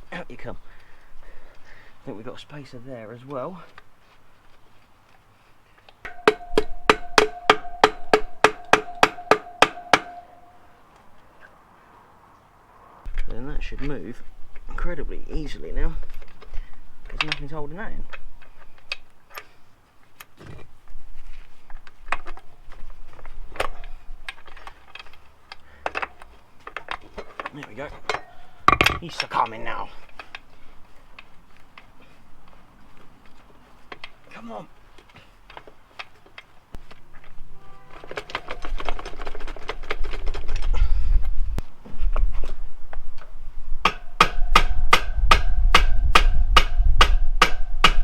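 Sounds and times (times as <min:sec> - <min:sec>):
metal clicks and knocks: 0:06.0 - 0:10.6, 0:21.7 - 0:30.5, 0:35.0 - 0:40.7
hammer blows on metal: 0:06.1 - 0:10.8, 0:43.8 - 0:48.0
metallic ringing tone: 0:06.1 - 0:10.8
wind rumble on microphone: 0:38.6 - 0:48.0.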